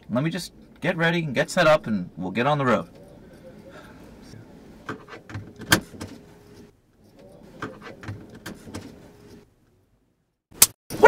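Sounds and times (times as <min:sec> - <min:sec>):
faint steady hum: 0:00.0 - 0:10.4.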